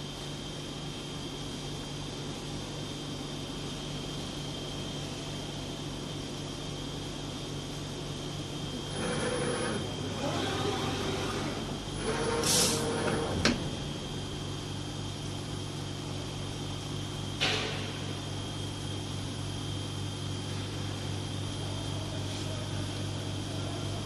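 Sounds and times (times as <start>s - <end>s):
welding machine humming: 8.4s - 15.5s
pneumatic cylinder clack: 12.1s - 13.8s.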